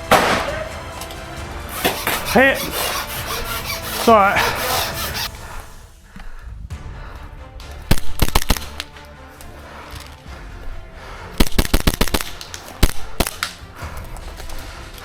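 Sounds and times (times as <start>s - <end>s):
airsoft guns firing: 0.0s - 0.5s, 7.9s - 8.9s, 11.4s - 13.5s.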